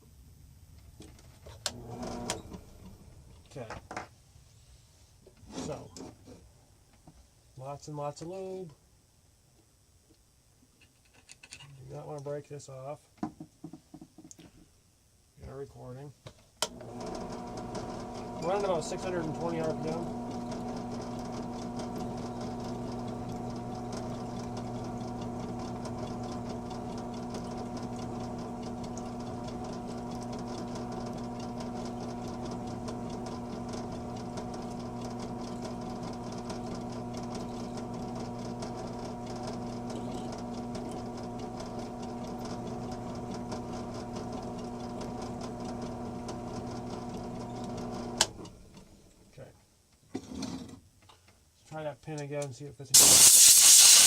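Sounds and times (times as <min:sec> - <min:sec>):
electric motor humming: 0:16.7 - 0:48.3.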